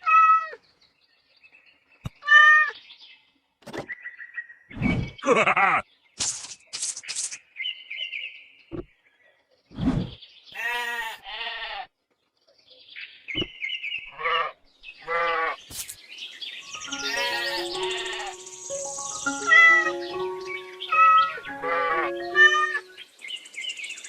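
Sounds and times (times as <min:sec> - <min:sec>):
goats bleating: 0:10.6 - 0:11.9, 0:16.9 - 0:18.4, 0:20.9 - 0:22.8
background music with stepped melody: 0:16.9 - 0:23.0.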